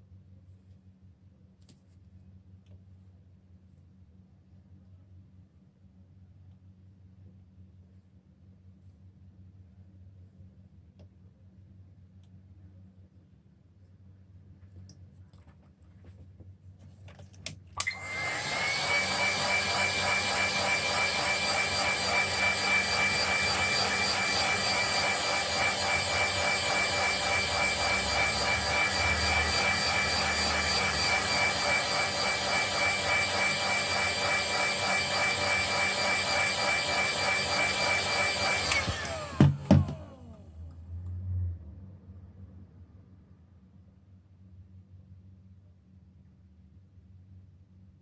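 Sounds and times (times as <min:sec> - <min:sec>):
electric motor whining: 0:17.8 - 0:40.2.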